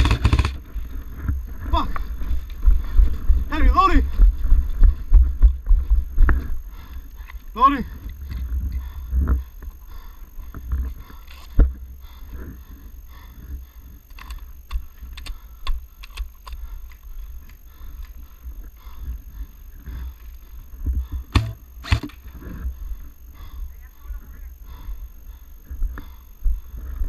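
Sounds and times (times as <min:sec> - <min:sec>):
sharp clicks and ticks: 0:00.0 - 0:00.6, 0:14.1 - 0:18.2, 0:21.3 - 0:22.2.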